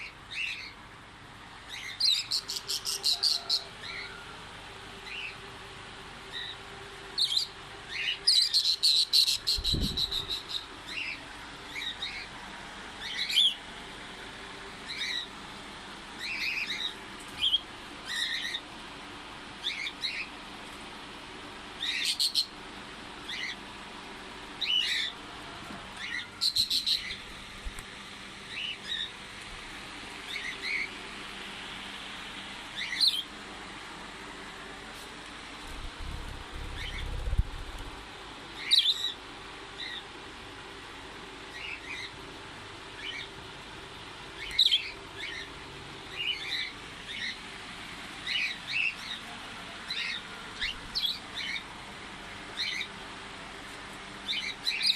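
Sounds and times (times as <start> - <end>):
parrots chirping and chattering: 0.0 - 0.8, 1.7 - 4.1, 7.2 - 12.4, 13.0 - 13.6, 14.8 - 15.4, 16.2 - 18.6, 19.6 - 20.4, 21.8 - 22.6, 23.2 - 23.6, 24.6 - 25.2, 26.0 - 27.4, 28.5 - 29.3, 30.2 - 31.0, 32.8 - 33.3, 36.2 - 37.8, 38.6 - 39.2, 39.8 - 40.0, 41.5 - 42.2, 43.0 - 43.4, 44.4 - 47.5, 48.2 - 51.7, 52.3 - 53.0, 54.2 - 54.9.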